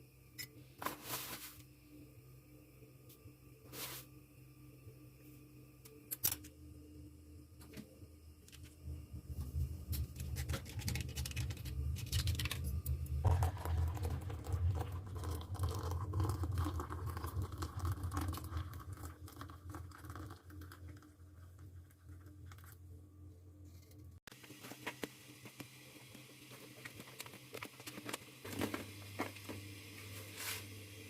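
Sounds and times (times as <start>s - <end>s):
steady low hum: 0.0s - 24.2s.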